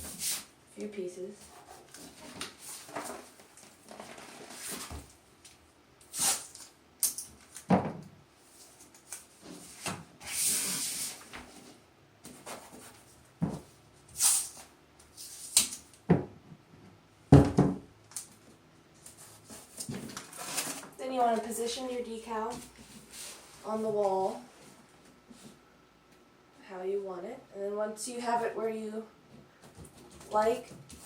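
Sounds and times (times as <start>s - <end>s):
tape ripping: 6.1s - 7.7s.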